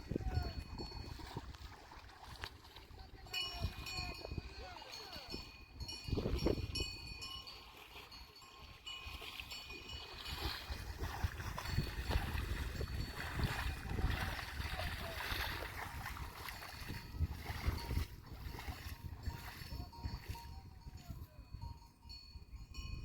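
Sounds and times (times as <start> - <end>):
water splashing and sloshing: 0.0 - 21.1
light ringing of bells: 0.3 - 1.1, 3.3 - 10.6, 16.2 - 23.0.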